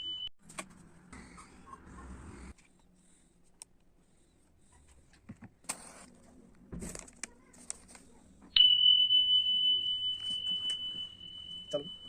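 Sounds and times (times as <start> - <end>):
high-pitched steady tone: 9.1 - 12.0.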